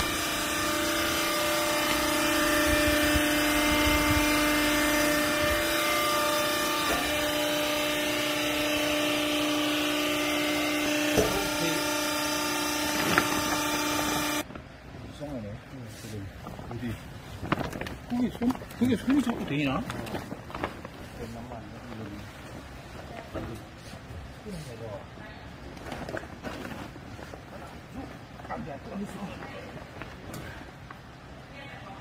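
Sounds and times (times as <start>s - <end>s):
hydraulic motor and pump whine: 0.0s - 14.6s.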